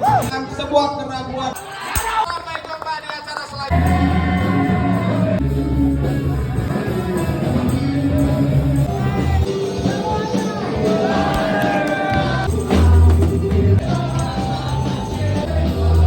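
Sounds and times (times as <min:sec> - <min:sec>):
rock music with singing: 0:03.7 - 0:16.0.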